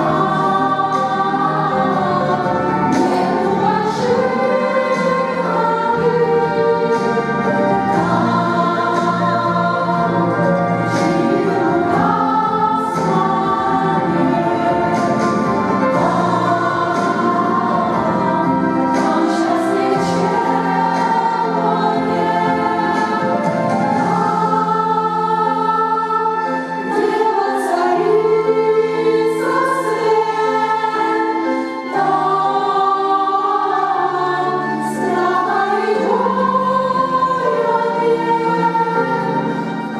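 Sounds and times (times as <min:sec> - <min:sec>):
church choir singing in harmony: 0:00.0 - 0:39.9.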